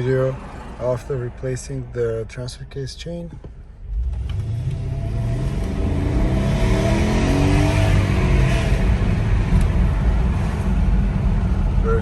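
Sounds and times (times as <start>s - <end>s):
low road rumble: 0.0s - 12.0s
car engine accelerating: 3.8s - 12.0s.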